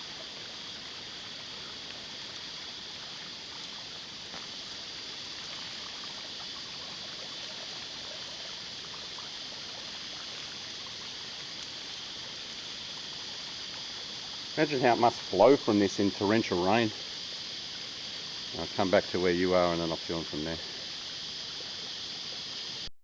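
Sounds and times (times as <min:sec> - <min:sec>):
waterfall pouring into a pool: 0:00.0 - 0:22.8.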